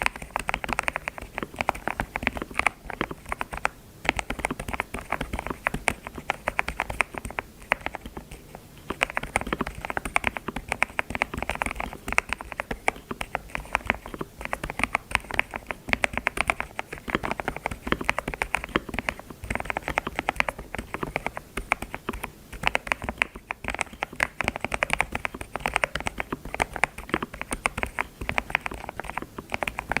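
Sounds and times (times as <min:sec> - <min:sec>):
computer keyboard typing: 0:00.0 - 0:30.0.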